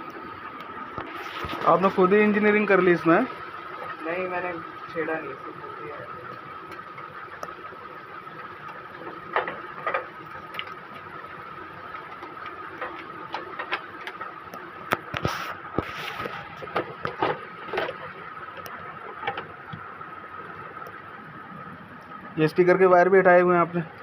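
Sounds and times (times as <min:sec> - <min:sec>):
short hiss: 0:15.2 - 0:16.4.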